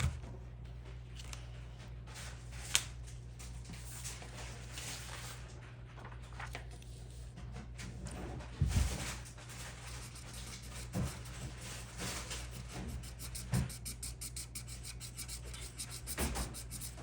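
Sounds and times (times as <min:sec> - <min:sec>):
pen scratching on paper: 0:09.7 - 0:17.0.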